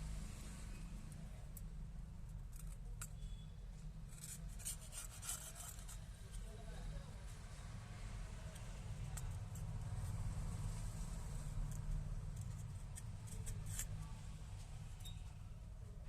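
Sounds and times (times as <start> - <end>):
small tools clicking and snipping: 11.6 - 14.1.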